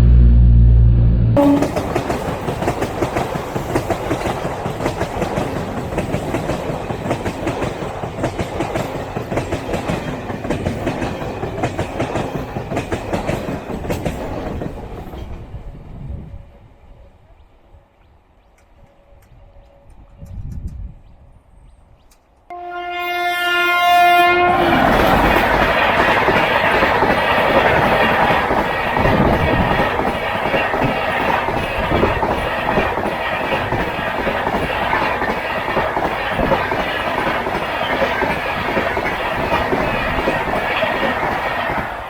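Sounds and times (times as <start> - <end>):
train horn blast: 0.0 - 2.0, 22.5 - 25.4
train wheels clattering over rails: 1.6 - 15.6, 24.6 - 42.0.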